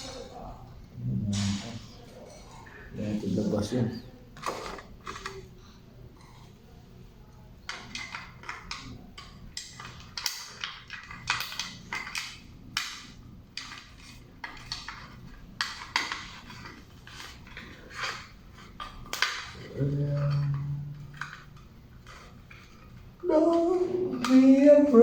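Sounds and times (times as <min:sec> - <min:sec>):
small hard objects clicking: 0:07.7 - 0:23.1.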